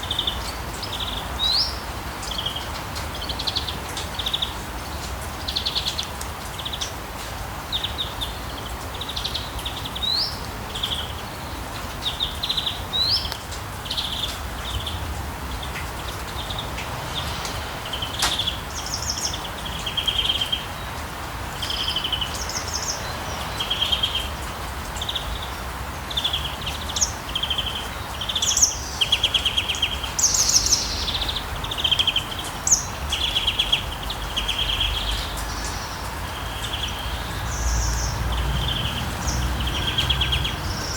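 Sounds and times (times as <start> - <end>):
birds singing: 0.0 - 7.0, 7.6 - 40.9
rain hissing: 0.0 - 40.9
low town rumble: 13.5 - 26.1, 33.8 - 40.9.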